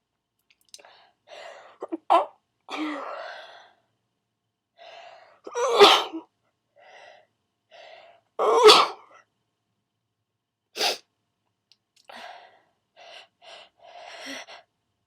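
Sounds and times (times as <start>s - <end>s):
person sneezing: 5.6s - 6.2s, 10.8s - 11.0s.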